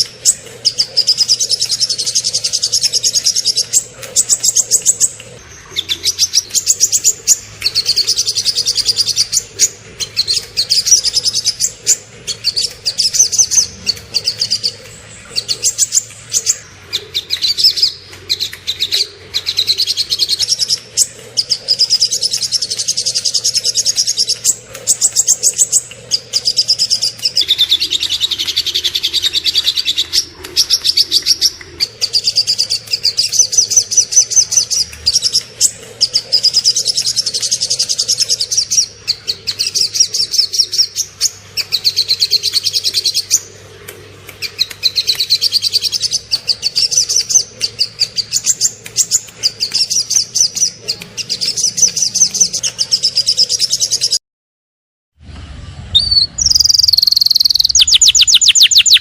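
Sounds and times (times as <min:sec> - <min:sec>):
songbird trilling: 0:56.0 - 0:59.0.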